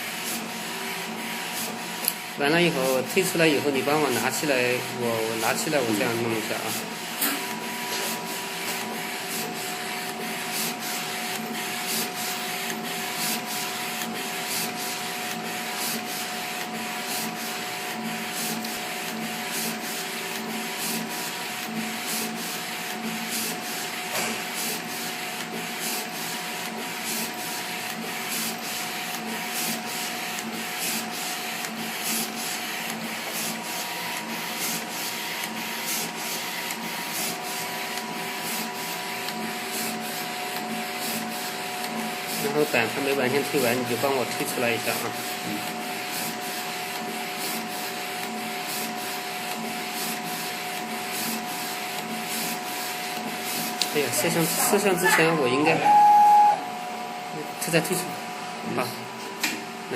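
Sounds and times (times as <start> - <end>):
printer mechanical whir: 0.0 - 59.9
repeating printer clicks: 8.6 - 23.6, 24.8 - 37.3, 37.9 - 52.4.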